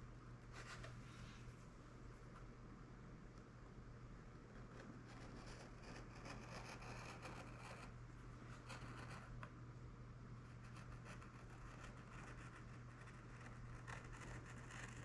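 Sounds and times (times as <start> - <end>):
low steady hum: 0.0 - 15.0
hobby knife scratching wood: 4.8 - 8.0, 10.6 - 15.0.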